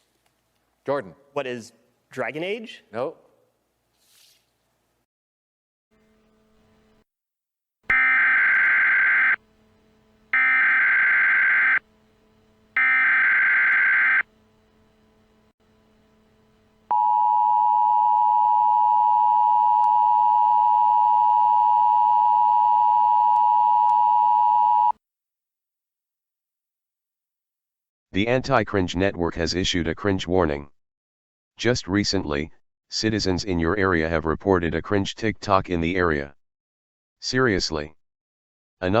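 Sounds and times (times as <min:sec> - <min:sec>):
data bursts: 0:10.3 - 0:11.8.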